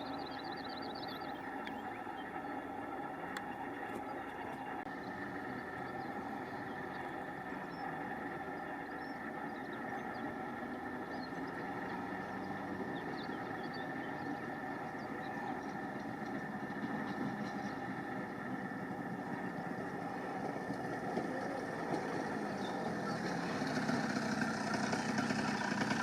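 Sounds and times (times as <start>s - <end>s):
faint bird chirps: 0.0s - 20.0s
motor running: 0.0s - 26.0s.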